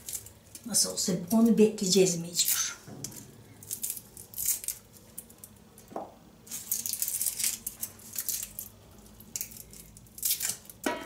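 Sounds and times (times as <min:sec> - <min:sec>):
garlic skins crackling: 0:00.0 - 0:11.0.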